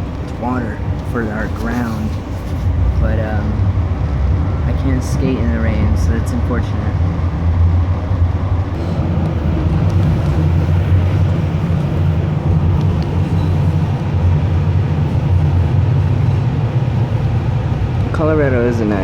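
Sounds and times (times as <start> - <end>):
train rumbling inside car: 0.0 - 19.0.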